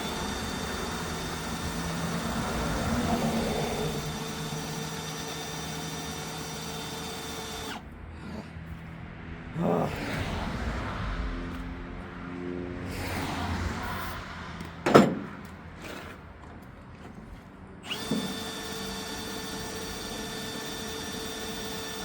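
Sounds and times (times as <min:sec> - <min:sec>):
electric drill whine: 0:00.0 - 0:07.9, 0:17.8 - 0:22.0.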